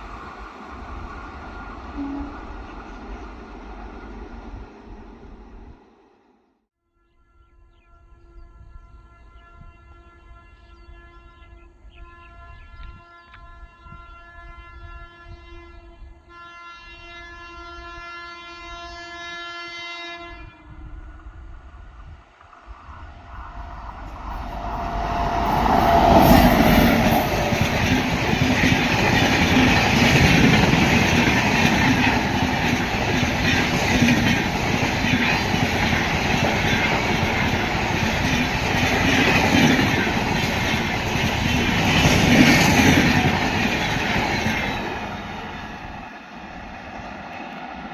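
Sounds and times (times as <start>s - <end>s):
train rushing past: 0.0s - 6.4s, 20.8s - 47.9s
locomotive horn blast: 1.9s - 2.6s, 7.2s - 21.0s.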